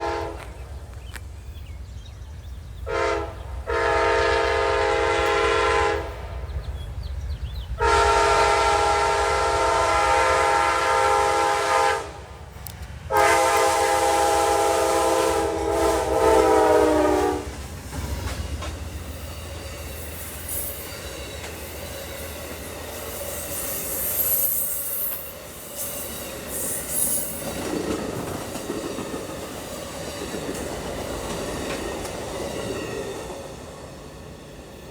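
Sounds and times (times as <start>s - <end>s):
locomotive air horn: 0.0s - 0.5s, 2.9s - 6.2s, 7.8s - 12.3s, 13.1s - 17.6s
passing train rumble: 0.0s - 34.9s
wheel and rail noise: 12.1s - 34.9s.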